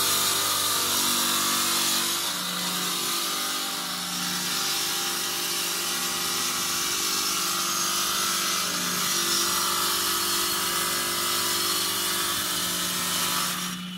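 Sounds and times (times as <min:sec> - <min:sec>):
stone cutting machine hum: 0:00.0 - 0:13.9.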